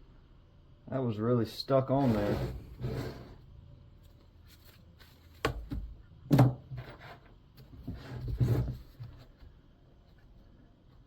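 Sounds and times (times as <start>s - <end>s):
rustling and scraping: 2.0s - 5.8s, 6.7s - 10.6s.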